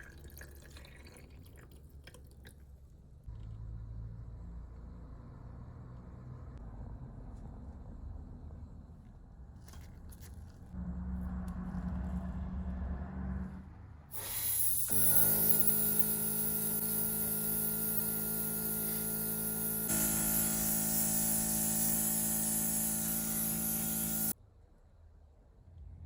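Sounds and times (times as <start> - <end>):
compressed air hissing: 14.1 - 24.4.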